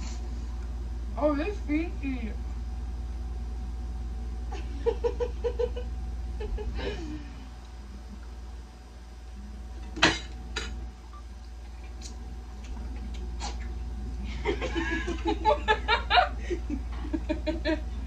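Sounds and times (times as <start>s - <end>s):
person giggling: 14.2s - 18.0s.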